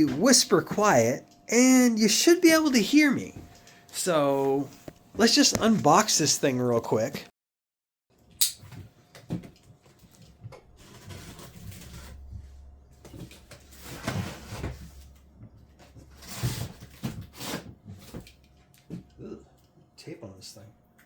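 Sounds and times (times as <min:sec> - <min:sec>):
cardboard scraping and rustling: 0:10.8 - 0:15.2, 0:15.8 - 0:18.3.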